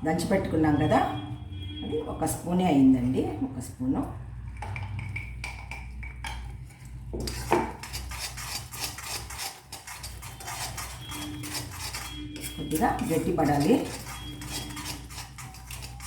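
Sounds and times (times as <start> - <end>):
spoon stirring and scraping pan: 4.4 - 16.0.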